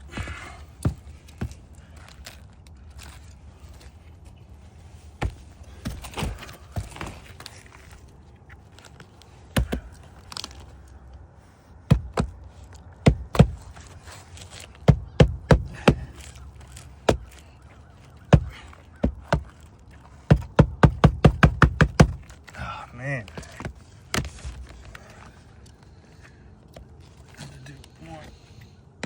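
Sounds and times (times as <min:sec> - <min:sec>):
hammer striking nail: 0:14.9 - 0:16.1, 0:20.3 - 0:22.3.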